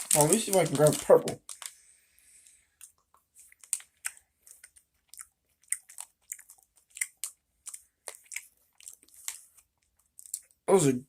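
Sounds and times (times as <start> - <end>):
wet chewing mouth sounds: 2.7 - 10.6.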